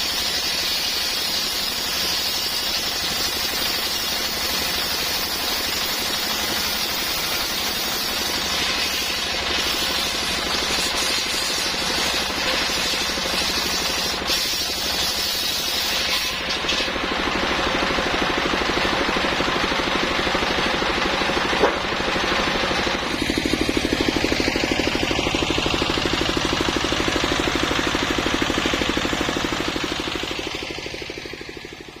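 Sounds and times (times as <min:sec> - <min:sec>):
saw blade cutting log hiss: 0:00.0 - 0:17.0
machine pulsing: 0:17.2 - 0:32.0.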